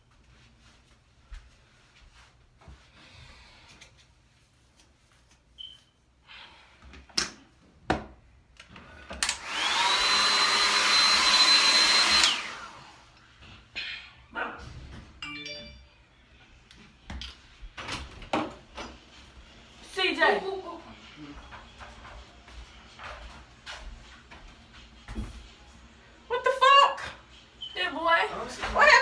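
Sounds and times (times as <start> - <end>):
hair dryer motor whine: 9.2 - 13.2.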